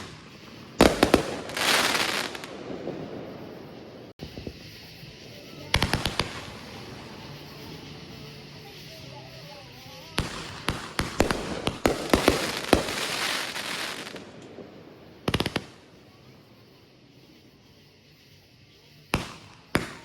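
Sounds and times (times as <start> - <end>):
fireworks bangs and crackle: 0.0 - 20.0.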